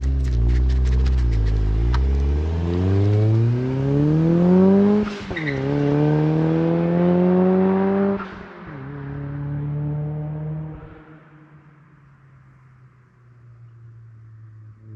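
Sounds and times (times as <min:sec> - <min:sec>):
turbo flutter: 0:00.0 - 0:02.2
car engine accelerating hard: 0:00.0 - 0:11.2.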